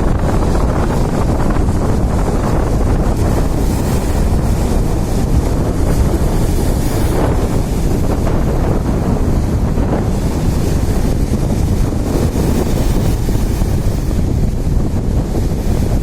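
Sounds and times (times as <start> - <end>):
sea surf hissing: 0.0 - 14.9
wind buffeting microphone: 0.0 - 16.0.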